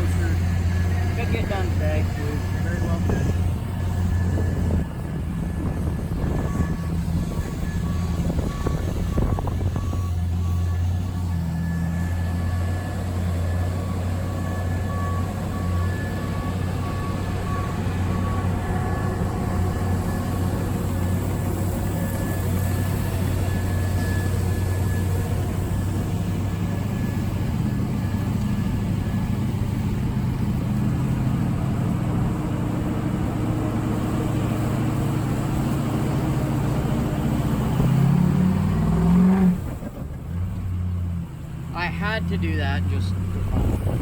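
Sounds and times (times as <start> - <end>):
vehicle engine running and revving: 0.0 - 44.0.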